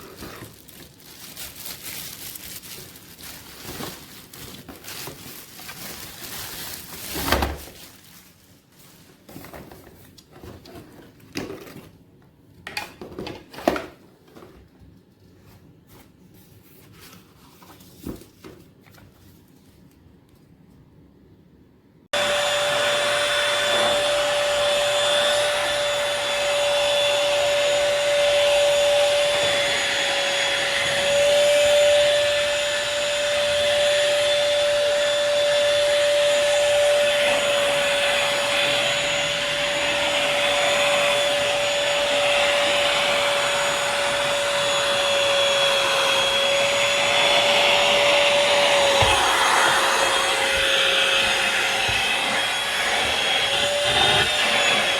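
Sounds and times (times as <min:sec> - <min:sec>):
vacuum cleaner whining: 0:00.0 - 0:08.2, 0:22.1 - 0:54.9.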